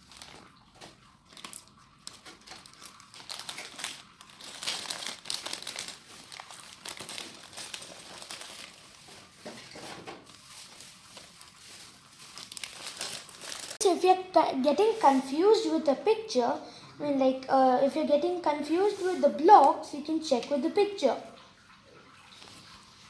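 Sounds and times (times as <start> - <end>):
plastic bag of bricks crinkling: 0.0 - 14.0.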